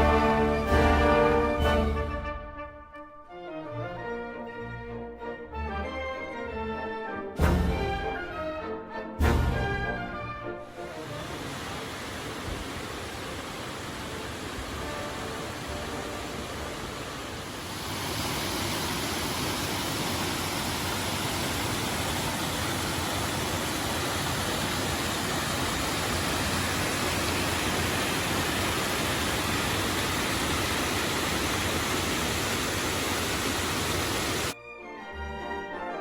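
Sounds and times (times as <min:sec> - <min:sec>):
rushing water: 0:00.0 - 0:02.2, 0:09.3 - 0:34.6.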